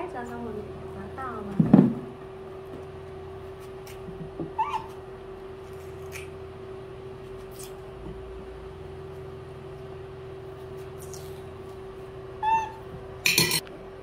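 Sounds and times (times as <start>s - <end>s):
steady hum: 0.0s - 14.0s
monkey squeaking: 4.6s - 5.0s, 12.4s - 12.8s.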